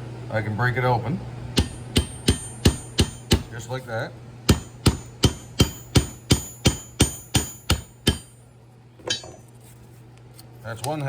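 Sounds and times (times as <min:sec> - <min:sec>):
hammer striking chisel on metal: 0:01.6 - 0:03.5, 0:04.5 - 0:08.3, 0:09.0 - 0:09.4.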